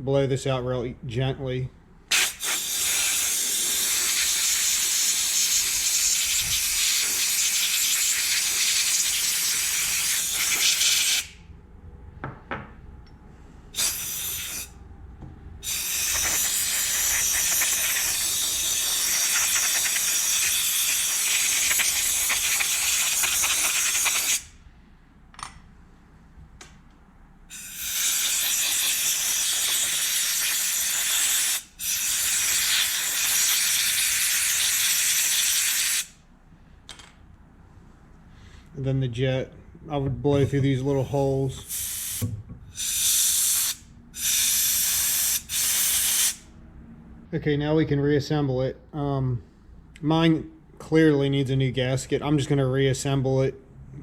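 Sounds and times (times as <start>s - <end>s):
compressed air hissing: 2.1s - 11.4s, 13.7s - 14.8s, 15.6s - 24.6s, 27.5s - 36.2s, 41.0s - 46.5s.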